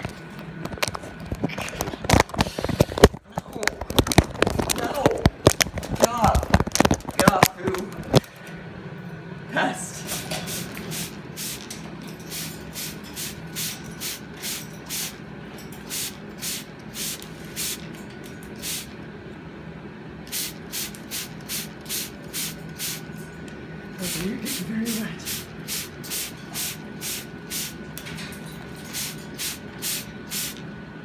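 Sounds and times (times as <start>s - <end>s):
spray bottle squirting water: 10.1s - 15.2s, 15.8s - 18.9s, 20.3s - 23.1s, 24.0s - 27.8s, 28.7s - 30.6s.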